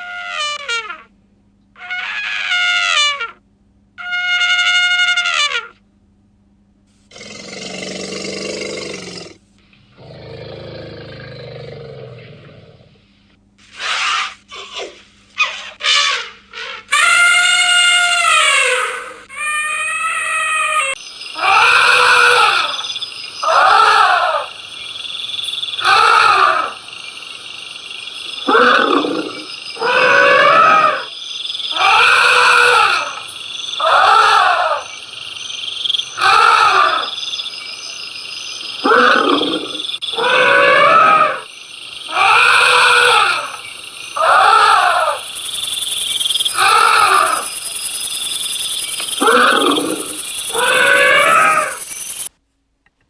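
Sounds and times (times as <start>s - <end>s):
animal crying rising and falling: 19.4s - 52.3s.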